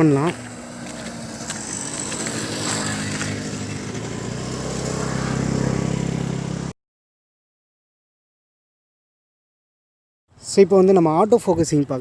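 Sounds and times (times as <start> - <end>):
vehicle engine running: 0.0 - 6.7.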